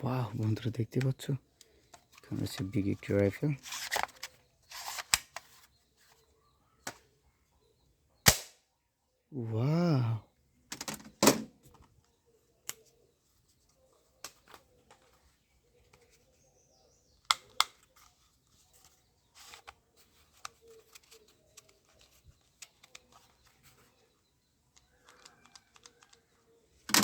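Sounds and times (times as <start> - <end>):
plastic rattling: 24.7 - 27.0.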